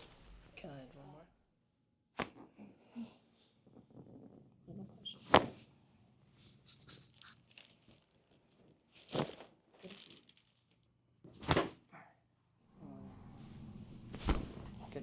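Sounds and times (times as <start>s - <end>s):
soft rustling and shuffling: 6.3s - 10.8s, 12.9s - 15.0s.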